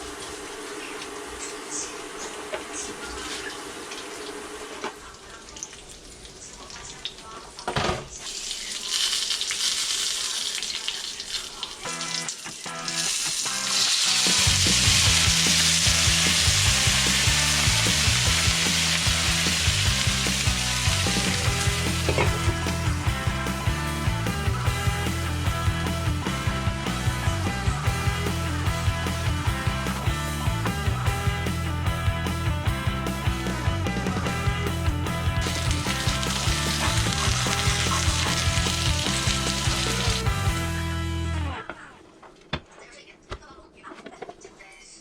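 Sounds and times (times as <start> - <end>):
dumplings sizzling in oil: 3.2 - 4.9, 8.2 - 22.5, 35.1 - 40.6.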